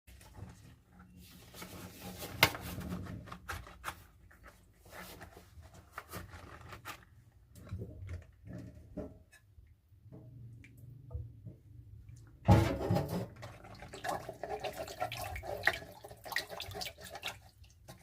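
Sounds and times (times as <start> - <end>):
scrubbing dishes: 12.5 - 18.0.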